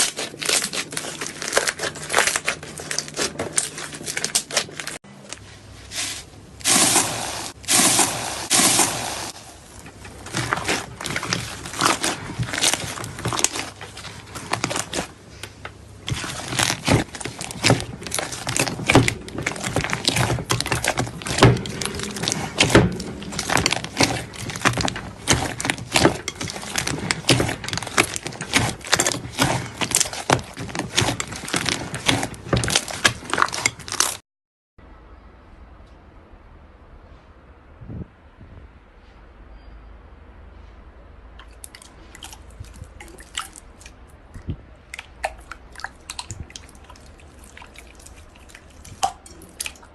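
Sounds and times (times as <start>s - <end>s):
slime squelches: 5.8s - 34.2s, 41.4s - 49.9s.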